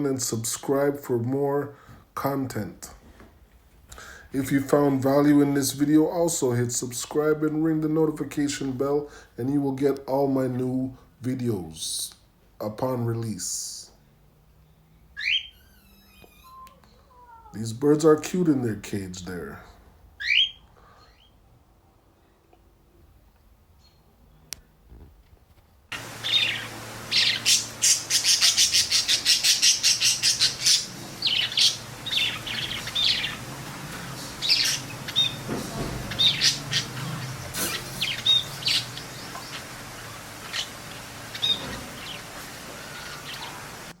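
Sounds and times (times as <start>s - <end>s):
cockatiels chirping: 15.2s - 16.7s, 20.2s - 21.3s, 26.0s - 43.9s.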